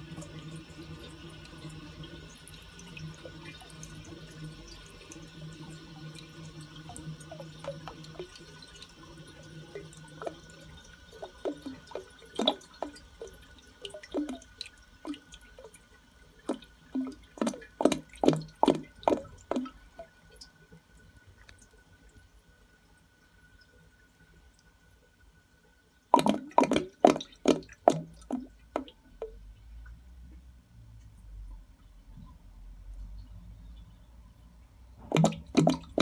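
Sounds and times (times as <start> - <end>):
toilet gurgling: 0.0 - 21.0, 26.1 - 29.4, 35.0 - 36.0
water running: 0.0 - 23.4, 26.1 - 29.5, 35.0 - 36.0.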